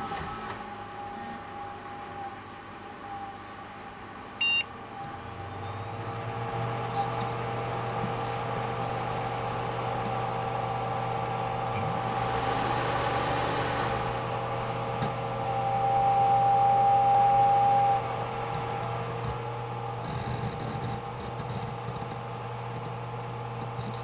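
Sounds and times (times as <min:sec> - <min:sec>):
computer fan hum: 0:00.1 - 0:24.0
drive whirring: 0:00.4 - 0:24.0
constant electronic tones: 0:04.3 - 0:12.4, 0:13.4 - 0:24.0
high steady whine: 0:05.4 - 0:24.0.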